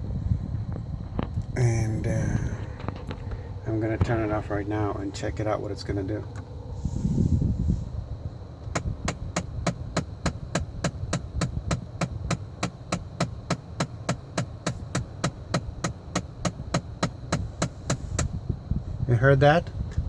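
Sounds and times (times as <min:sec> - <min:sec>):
low steady hum: 0:00.0 - 0:20.0
rapid clicking behind dashboard: 0:02.3 - 0:06.5, 0:08.6 - 0:18.4.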